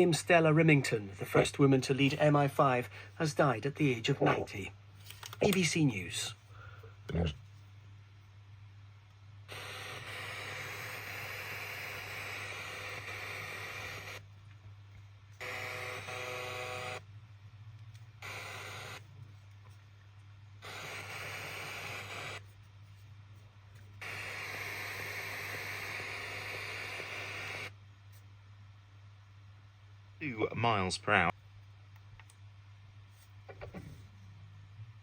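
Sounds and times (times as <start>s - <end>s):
low steady hum: 0.0s - 9.5s
steady radio tones: 9.5s - 14.2s, 20.6s - 22.5s, 24.0s - 27.8s
radio static hiss: 9.5s - 14.3s, 18.2s - 19.2s, 20.6s - 22.6s, 24.0s - 27.8s, 30.2s - 31.4s.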